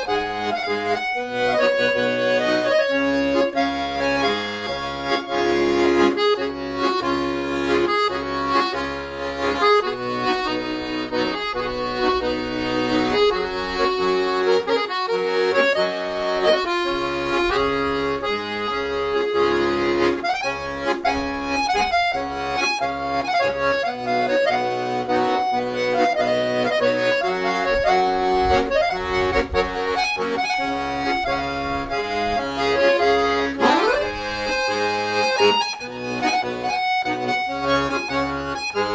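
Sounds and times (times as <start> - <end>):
accordion playing a tune: 0.0 - 38.9.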